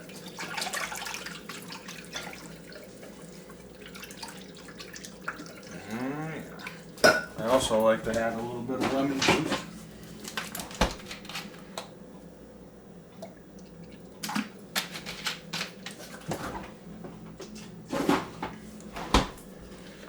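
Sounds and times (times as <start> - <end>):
kitchen containers and utensils clicking: 14.2 - 16.6.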